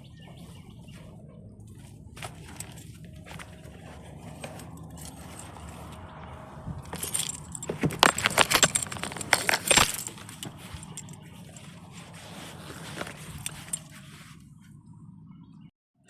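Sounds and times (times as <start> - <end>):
steady low hum: 0.0 - 15.7
keys jangling: 2.2 - 6.1, 6.8 - 14.1.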